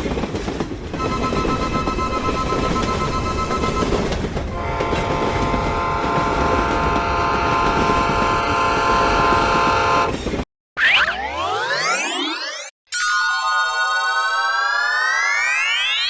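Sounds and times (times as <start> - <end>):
train running noise: 0.0 - 10.4
train horn chord: 4.5 - 10.1.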